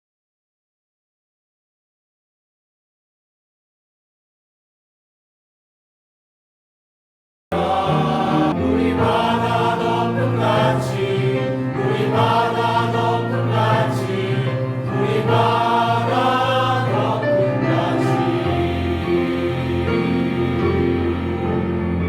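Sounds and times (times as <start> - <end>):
choir singing worship song: 7.5 - 22.0.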